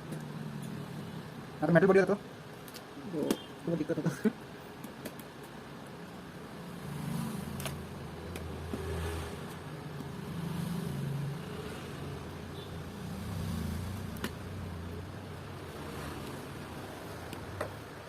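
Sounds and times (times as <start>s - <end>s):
passing motor vehicles: 6.6s - 17.9s.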